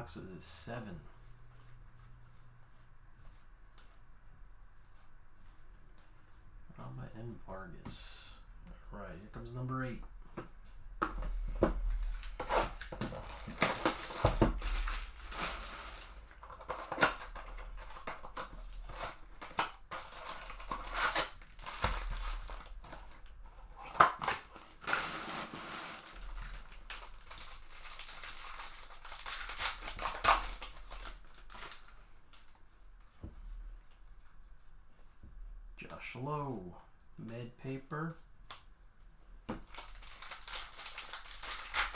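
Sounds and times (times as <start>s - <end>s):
plastic wrap crinkling and tearing: 11.9s - 32.6s, 39.6s - 41.9s
cardboard ripping: 12.0s - 31.9s, 39.7s - 41.9s.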